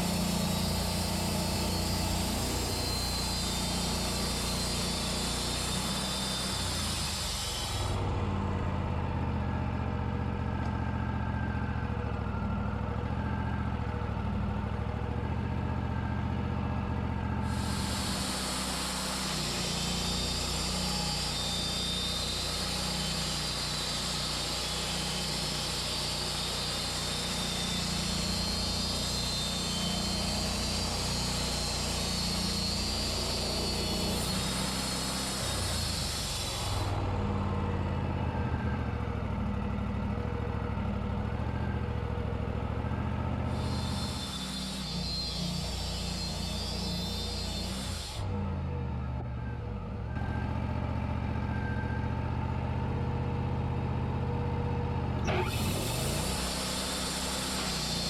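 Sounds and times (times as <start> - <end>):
sawmill hiss: 0.0 - 9.0, 17.3 - 39.7, 41.5 - 48.5, 55.2 - 58.0
sawmill engine humming: 0.0 - 58.0.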